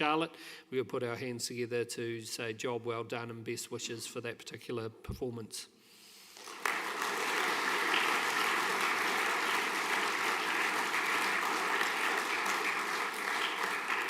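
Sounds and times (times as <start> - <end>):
audience applauding: 6.4 - 14.0.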